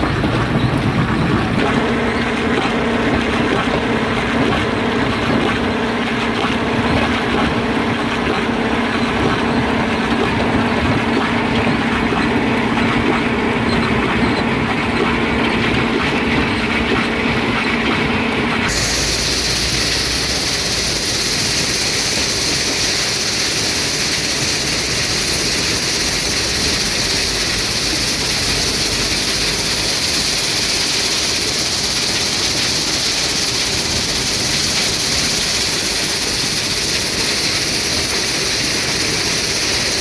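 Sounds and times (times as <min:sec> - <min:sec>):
rock-crushing machinery grinding: 0:00.0 - 0:23.8.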